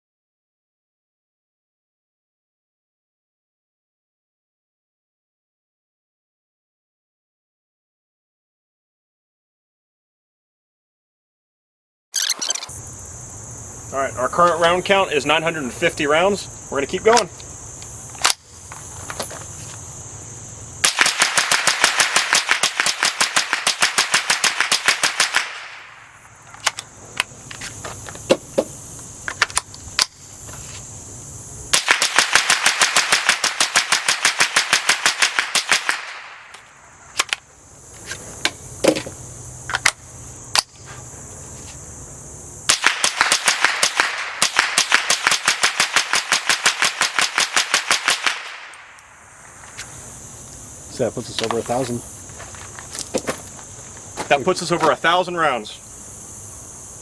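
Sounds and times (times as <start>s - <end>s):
suppressed rifle shots: 20.8s - 26.0s, 31.7s - 36.6s, 42.7s - 49.0s.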